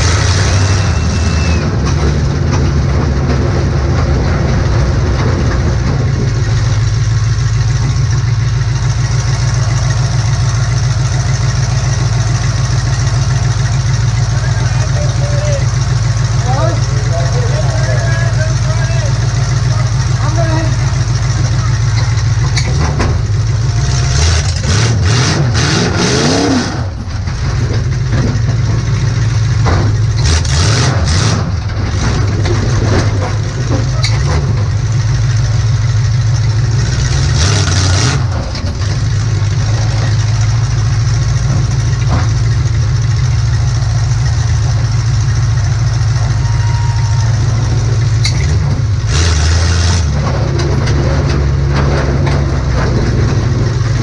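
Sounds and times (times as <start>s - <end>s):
loud bursts of noise: 0.0s - 6.6s
car engine revving: 0.0s - 54.0s.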